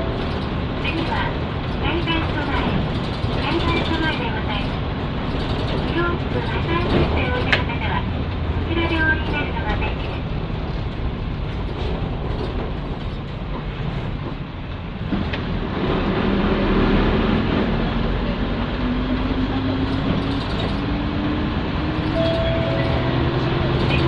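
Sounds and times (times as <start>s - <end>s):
bus diesel engine accelerating: 14.2s - 24.0s.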